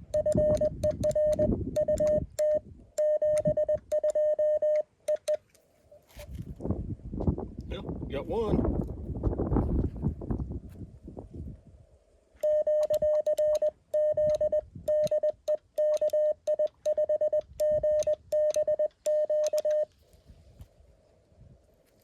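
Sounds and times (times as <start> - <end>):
morse code tone: 0.0 - 5.4, 12.4 - 19.9.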